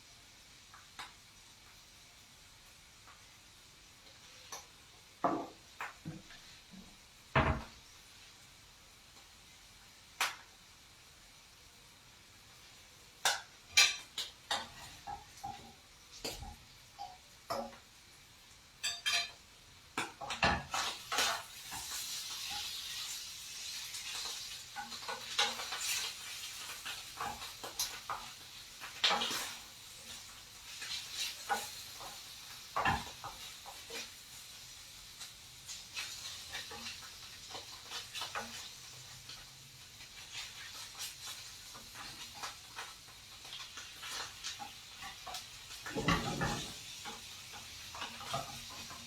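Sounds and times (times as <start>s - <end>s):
food sizzling in a frying pan: 0.0s - 49.0s
utensil scraping a pan: 44.0s - 49.0s.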